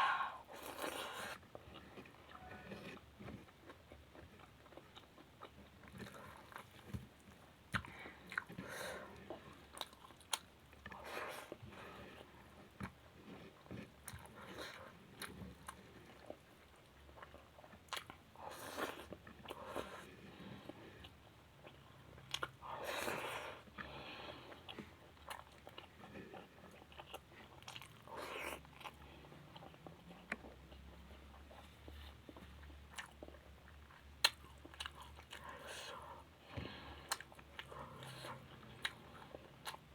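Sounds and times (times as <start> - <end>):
person chewing food: 0.0 - 39.9.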